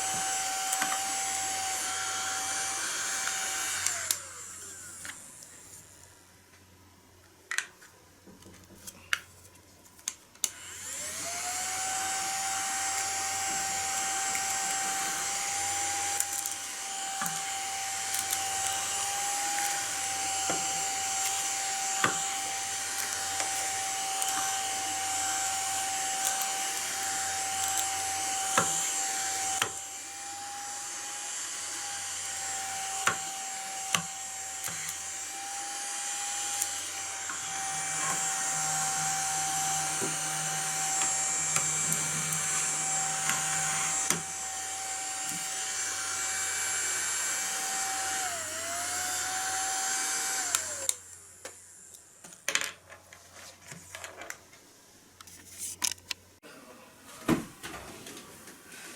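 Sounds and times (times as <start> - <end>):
small vacuum cleaner whine: 0.0 - 6.6, 10.4 - 53.7.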